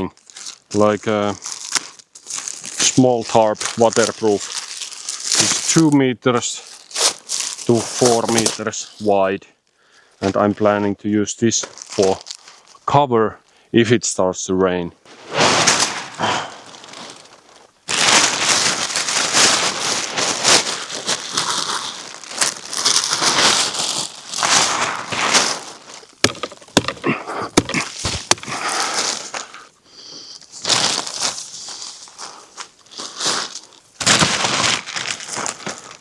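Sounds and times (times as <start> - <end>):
tarp rustling and crinkling: 0.0 - 9.1, 11.5 - 12.9, 15.0 - 36.0
tarp snapping: 0.2 - 5.9, 6.7 - 8.6, 15.2 - 29.6, 30.6 - 36.0.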